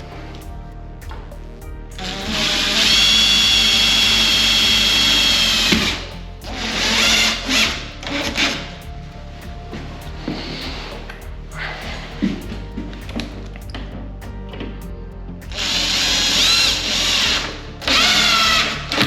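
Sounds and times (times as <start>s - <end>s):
power drill drilling into wood: 15.6s - 18.8s.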